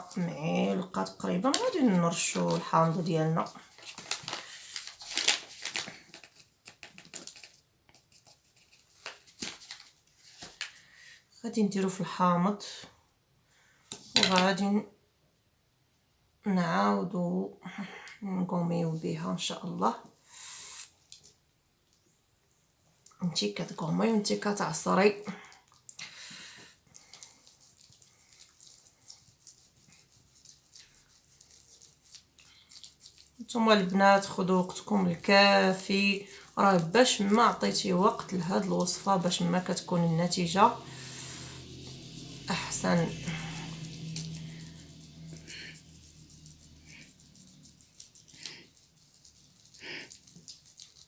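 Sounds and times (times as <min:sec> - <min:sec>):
hands scrubbed with lemon: 0:26.4 - 0:51.0.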